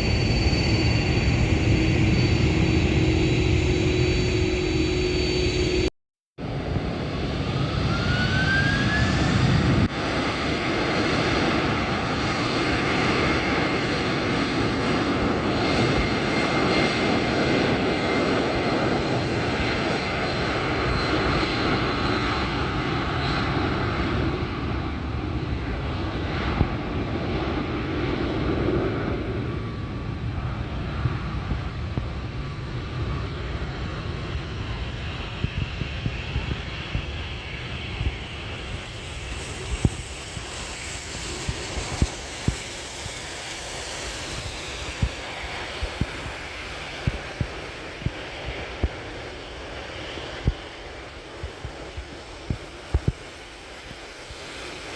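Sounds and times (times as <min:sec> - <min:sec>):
engine whine rising in pitch: 0:00.0 - 0:05.9, 0:07.1 - 0:09.9, 0:36.4 - 0:48.7
airliner engine noise: 0:00.0 - 0:54.9.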